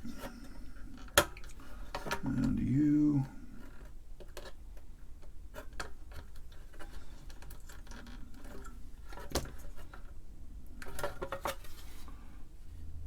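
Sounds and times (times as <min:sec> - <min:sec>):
low steady hum: 0:00.0 - 0:04.3.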